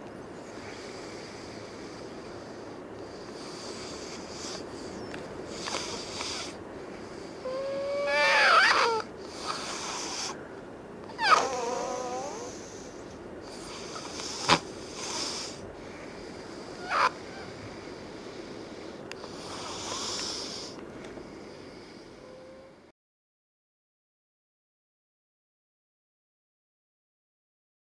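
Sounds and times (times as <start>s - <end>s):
loud snoring with whistling nose: 3.4s - 6.6s, 7.4s - 10.4s, 11.1s - 12.6s, 13.6s - 15.6s, 19.4s - 20.8s.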